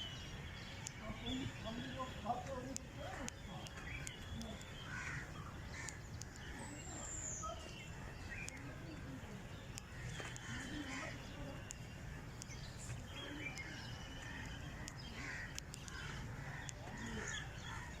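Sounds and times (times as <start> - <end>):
birds calling: 0.0 - 18.0
crows cawing: 4.8 - 6.1, 9.9 - 11.2, 14.2 - 18.0.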